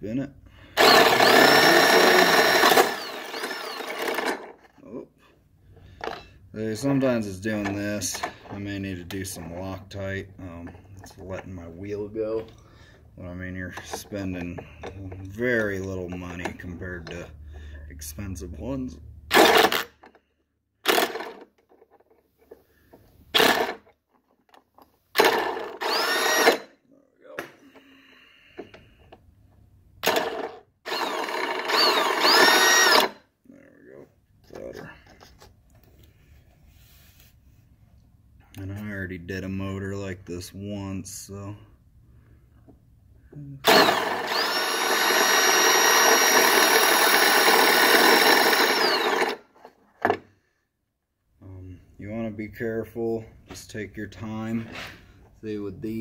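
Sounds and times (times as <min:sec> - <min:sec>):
motor whine: 0:00.8 - 0:04.3, 0:25.8 - 0:26.6, 0:30.9 - 0:33.1, 0:43.6 - 0:49.4
piston ring filer grinding: 0:00.8 - 0:04.5, 0:25.2 - 0:26.7, 0:30.1 - 0:33.1, 0:43.7 - 0:49.4.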